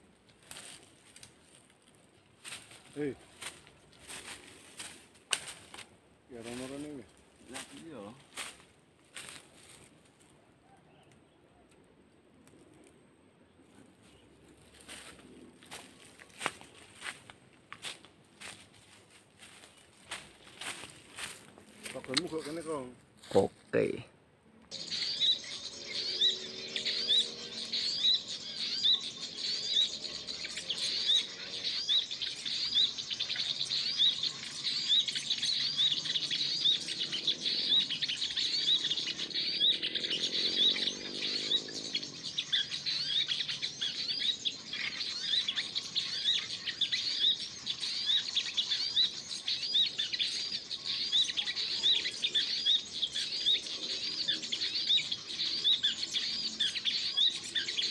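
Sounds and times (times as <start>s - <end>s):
small bird chirping: 24.7s - 57.9s.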